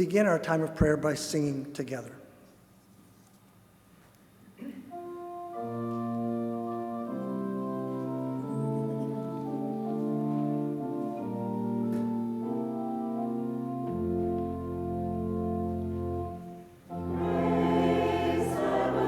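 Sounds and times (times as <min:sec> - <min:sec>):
church organ chords: 0:04.9 - 0:19.0.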